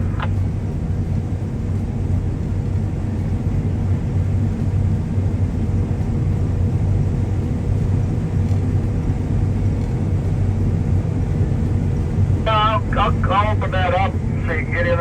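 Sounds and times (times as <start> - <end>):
diesel engine droning: 0.0 - 15.0.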